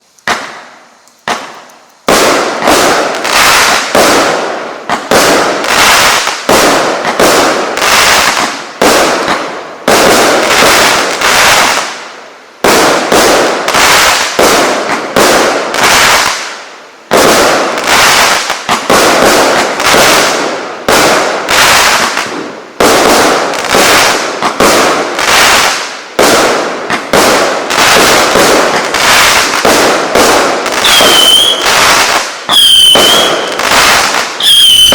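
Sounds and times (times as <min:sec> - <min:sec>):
firework battery firing: 0:00.0 - 0:34.9
firework shots and bursts: 0:00.0 - 0:34.9.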